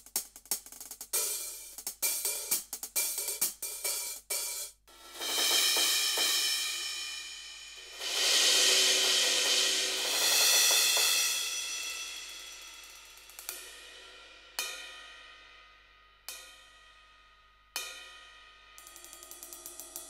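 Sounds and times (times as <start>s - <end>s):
cymbal strikes: 4.5s - 20.0s
crash cymbal ringing: 5.0s - 13.9s.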